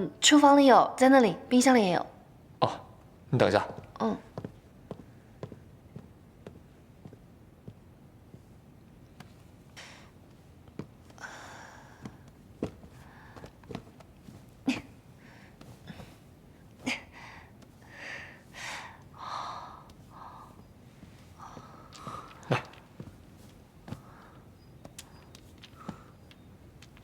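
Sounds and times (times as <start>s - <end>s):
rustling: 9.1s - 27.0s.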